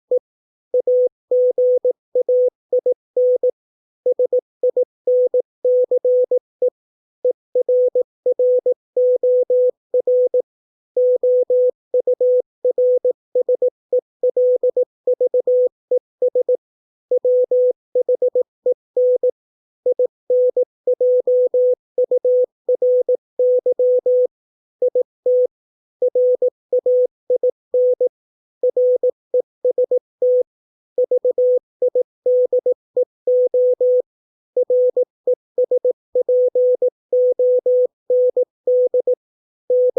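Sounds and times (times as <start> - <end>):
morse code beeps: 19.9 - 24.3, 24.9 - 25.5, 26.1 - 39.9.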